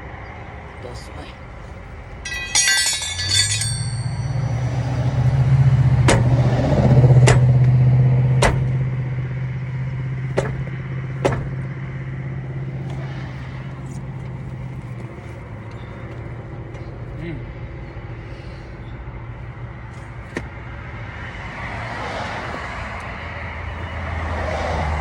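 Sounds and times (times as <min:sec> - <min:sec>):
vehicle engine droning: 0:00.0 - 0:25.0
sharp clicks or knocks: 0:06.1 - 0:06.3.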